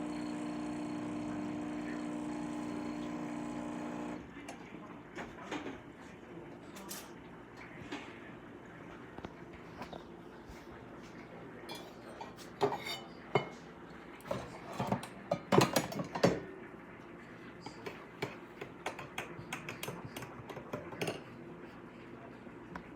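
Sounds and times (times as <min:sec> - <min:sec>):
dishes and utensils clinking: 0:11.7 - 0:13.6, 0:14.2 - 0:16.5.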